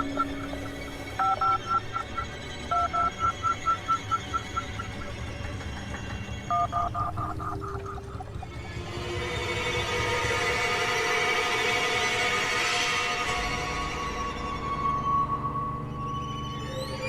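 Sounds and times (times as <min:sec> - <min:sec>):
telephone keypad touch-tones: 0:00.0 - 0:05.2, 0:06.5 - 0:08.5.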